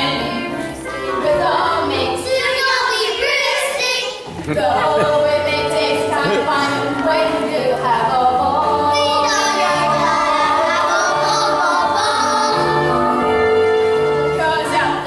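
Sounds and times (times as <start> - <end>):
stage musical song singing: 0.0 - 15.0
instrumental accompaniment: 4.2 - 15.0.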